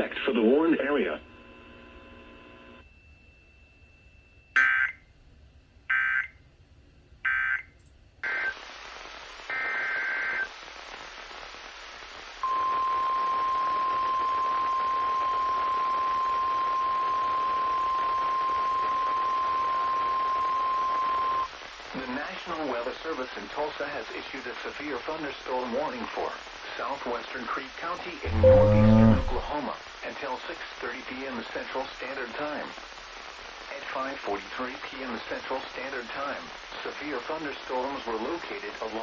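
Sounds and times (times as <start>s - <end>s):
steady warning alarm tone: 28.3s - 29.5s.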